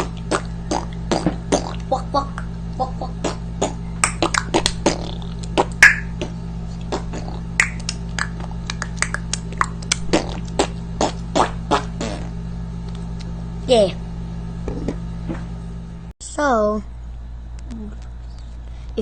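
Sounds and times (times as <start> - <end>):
steady low hum: 0.0 - 19.0
mouth clicks and pops: 3.6 - 6.3, 6.9 - 12.3.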